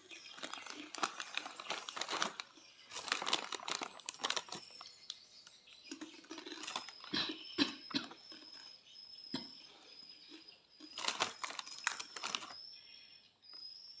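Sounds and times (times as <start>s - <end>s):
crunchy snack being eaten: 0.0s - 5.2s, 5.8s - 8.8s, 10.2s - 12.6s
plastic packet crinkling: 0.0s - 8.7s, 10.8s - 12.6s.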